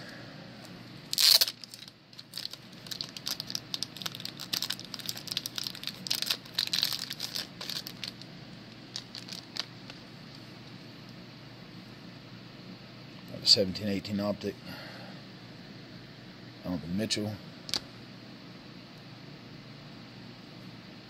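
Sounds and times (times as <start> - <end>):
plastic packaging crinkling: 1.1 - 10.5.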